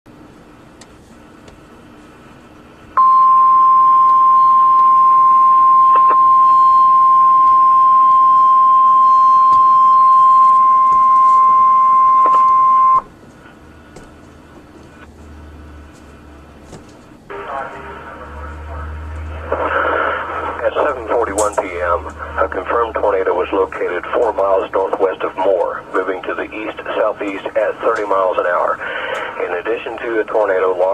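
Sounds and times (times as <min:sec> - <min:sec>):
steady high alarm tone: 0:03.0 - 0:13.1, 0:20.2 - 0:23.5
faint radio hiss: 0:17.3 - 0:30.9.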